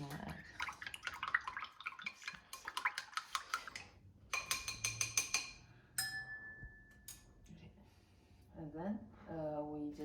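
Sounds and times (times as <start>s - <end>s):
utensil beating eggs in bowl: 0.0s - 5.6s
ringing clink on bowl: 4.4s - 7.3s.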